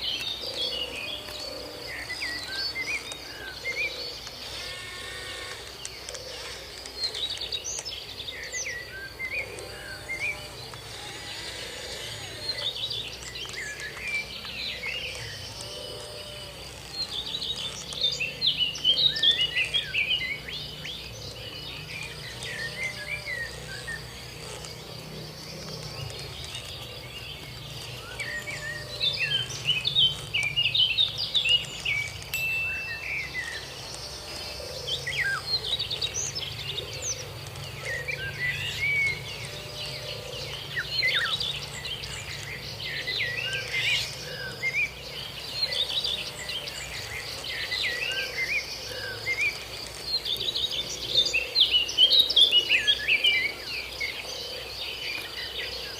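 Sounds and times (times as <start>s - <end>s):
high-pitched insect drone: 0.0s - 6.8s, 8.4s - 27.0s, 27.6s - 40.4s
birds chirping: 0.0s - 55.9s.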